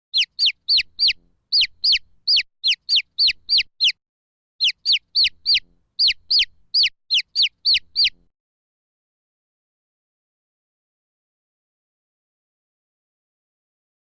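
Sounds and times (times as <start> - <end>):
chick peeping: 0.1 - 4.0, 4.6 - 8.2.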